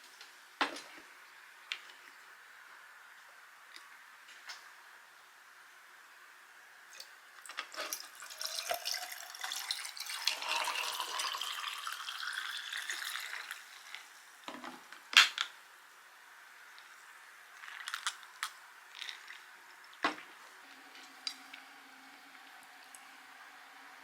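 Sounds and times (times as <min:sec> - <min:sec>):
liquid pouring into a glass: 0:07.7 - 0:14.4.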